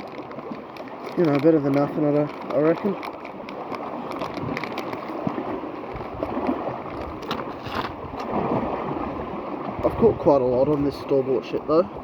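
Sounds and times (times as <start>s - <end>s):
faint clicks and rustles: 0.0s - 8.3s
sea water washing on shore: 0.0s - 12.0s.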